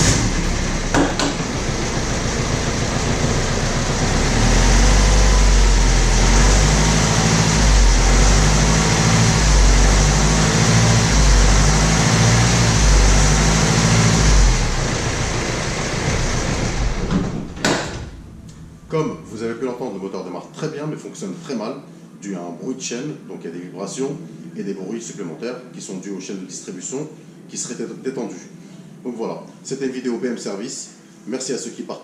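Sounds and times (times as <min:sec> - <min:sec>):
diesel engine running roughly: 0:00.0 - 0:19.5.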